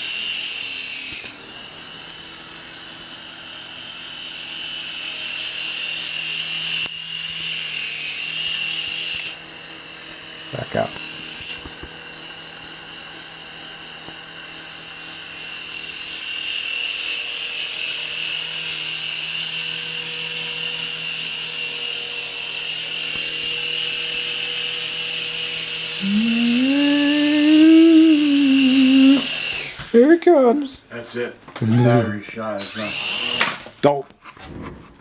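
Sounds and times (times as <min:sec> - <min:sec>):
toy helicopter motor whining: 0:00.0 - 0:30.8, 0:31.7 - 0:33.7
lower rising tone: 0:26.0 - 0:29.3.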